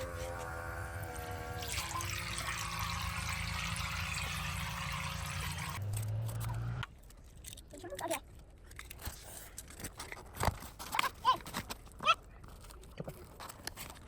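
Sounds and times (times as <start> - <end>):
low hum: 0.0 - 6.9
water churning and splashing: 1.2 - 5.8.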